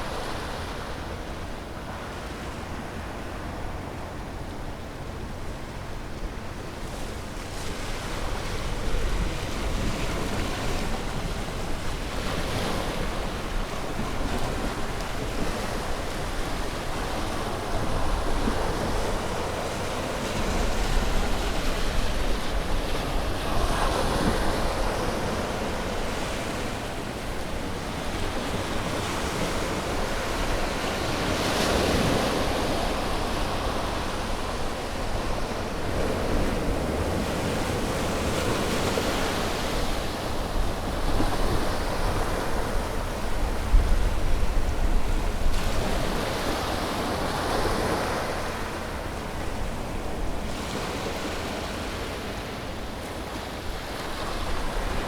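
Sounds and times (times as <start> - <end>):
ocean waves breaking on shore: 0.0 - 55.0
wind on microphone: 8.2 - 51.0.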